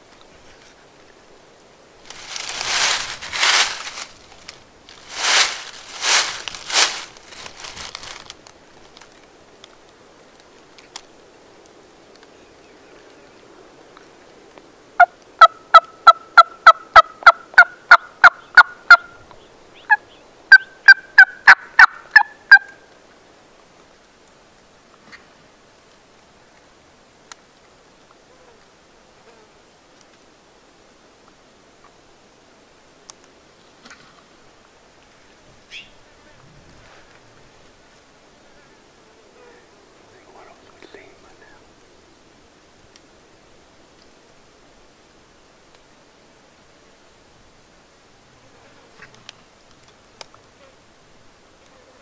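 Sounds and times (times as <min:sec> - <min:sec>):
turkey gobbling: 0:15.4 - 0:19.1, 0:19.9 - 0:22.8
turkey yelping: 0:19.8 - 0:22.7.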